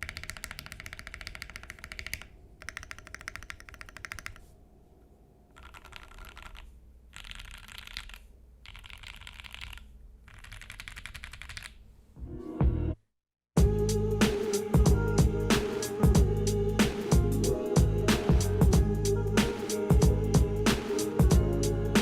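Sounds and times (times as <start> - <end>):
mechanical keyboard typing: 0.0 - 4.4, 5.5 - 11.8.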